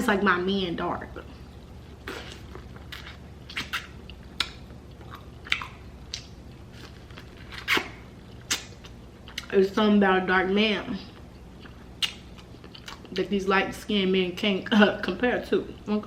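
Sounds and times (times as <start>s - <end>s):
low steady hum: 0.0s - 16.0s
person chewing food: 1.7s - 9.5s, 11.1s - 13.2s
wet mouth smacks: 2.0s - 6.4s, 7.5s - 9.5s, 11.6s - 13.1s.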